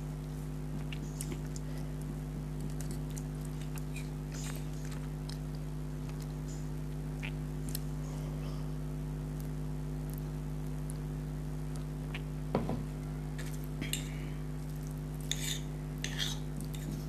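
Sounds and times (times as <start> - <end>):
low electrical hum: 0.0 - 17.0
person chewing food: 0.2 - 8.0, 13.3 - 17.0.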